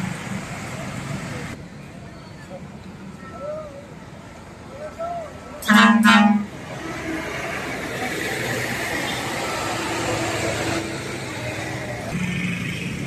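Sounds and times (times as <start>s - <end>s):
engines and traffic running: 0.0s - 13.0s
loud vehicle horn blast: 5.6s - 6.5s.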